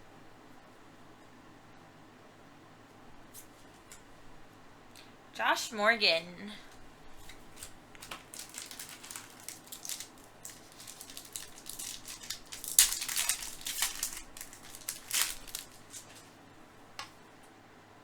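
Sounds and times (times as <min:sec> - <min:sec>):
cards and foil wrapper rustling: 0:07.1 - 0:16.4.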